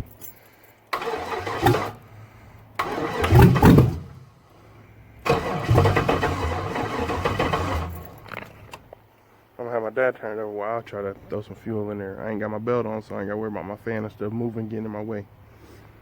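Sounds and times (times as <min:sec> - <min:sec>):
engine cranking by starter: 0:00.9 - 0:04.2, 0:05.2 - 0:08.9.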